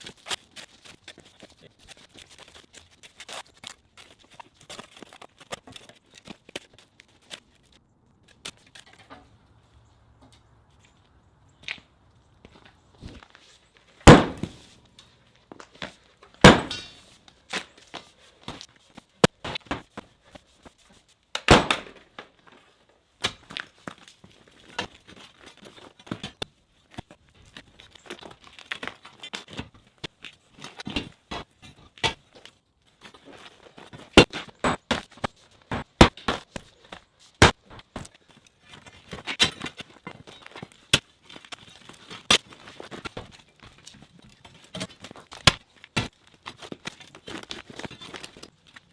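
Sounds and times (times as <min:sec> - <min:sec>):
sledgehammer knocking on concrete: 0:14.1 - 0:14.6.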